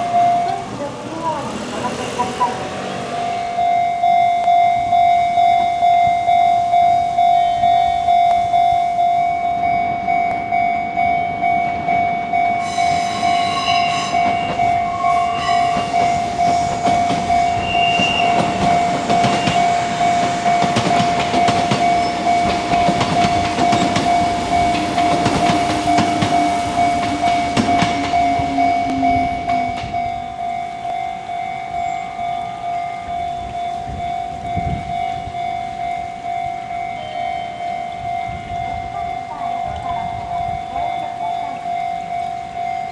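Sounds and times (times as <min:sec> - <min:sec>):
train horn blasts: 0:00.0 - 0:05.0, 0:12.5 - 0:20.8, 0:24.1 - 0:31.0
level crossing bell ringing: 0:01.7 - 0:42.9
train wheels clattering: 0:12.6 - 0:31.2.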